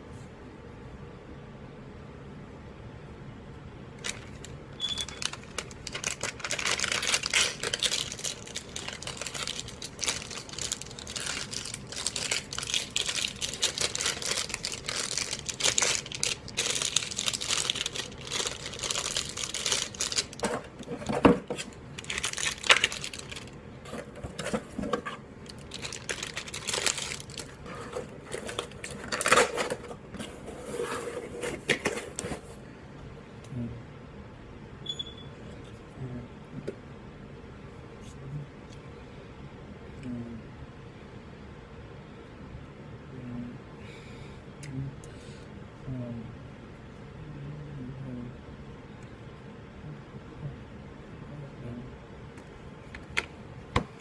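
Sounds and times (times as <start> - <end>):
packaging crinkling and rustling: 4.0 - 32.5.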